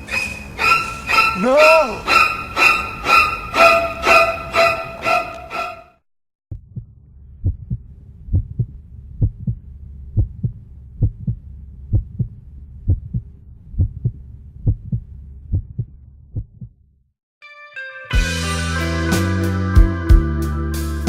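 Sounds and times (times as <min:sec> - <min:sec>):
heartbeat thumps: 0:06.5 - 0:16.8
music: 0:17.4 - 0:21.0.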